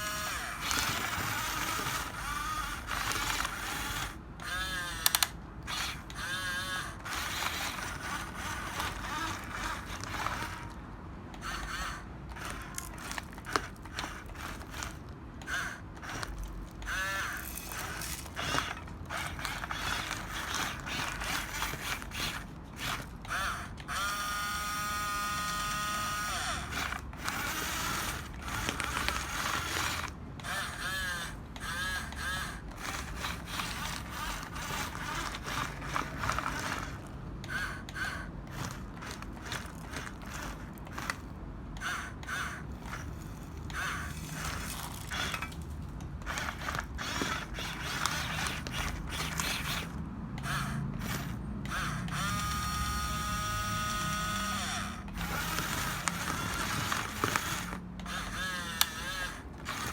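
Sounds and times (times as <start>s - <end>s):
toy motors whirring: 0.0s - 59.9s.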